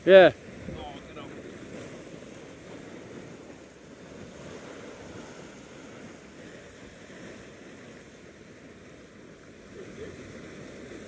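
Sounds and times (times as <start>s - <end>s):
sea waves washing: 0.0s - 11.0s
wind buffeting microphone: 0.2s - 11.0s.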